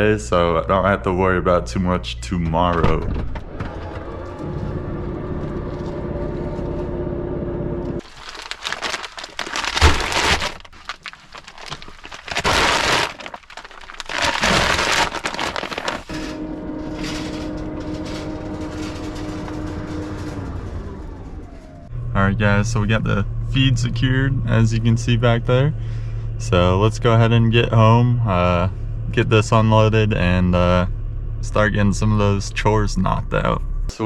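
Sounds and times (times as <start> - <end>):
vehicle engine humming: 0.0 - 34.0
crackling crunching bursts: 8.0 - 16.1.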